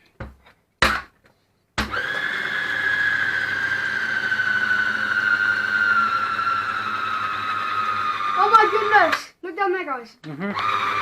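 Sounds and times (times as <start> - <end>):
electric mixer whining: 1.8 - 9.2, 10.4 - 11.0.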